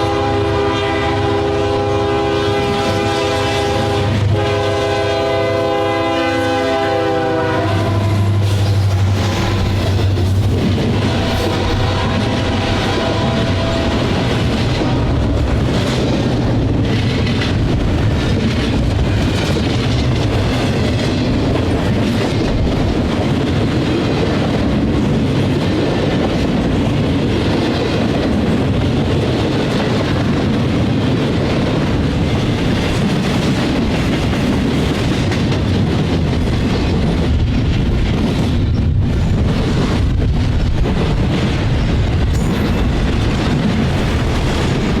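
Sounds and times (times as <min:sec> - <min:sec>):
faint locomotive horn: 0:00.0 - 0:08.6, 0:11.0 - 0:15.3
steel wheels rolling on rail: 0:00.0 - 0:45.0.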